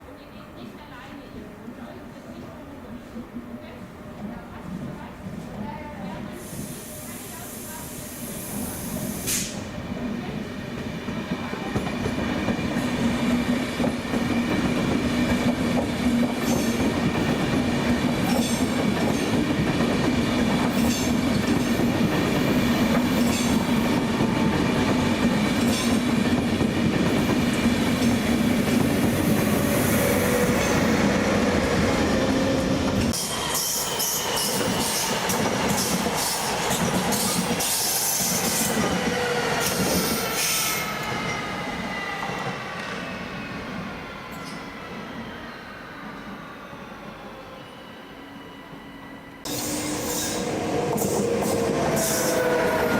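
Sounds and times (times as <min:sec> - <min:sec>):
train rumbling over tracks: 0:00.0 - 0:52.9.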